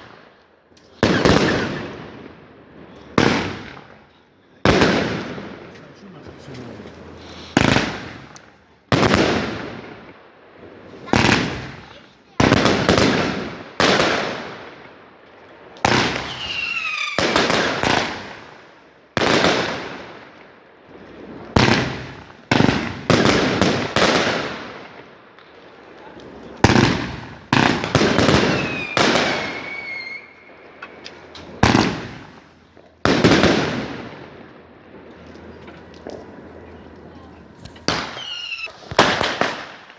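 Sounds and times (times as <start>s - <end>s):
fireworks bangs echoing: 0.0s - 39.9s
falling firework whistle: 16.2s - 17.2s, 28.3s - 30.5s, 37.8s - 39.3s.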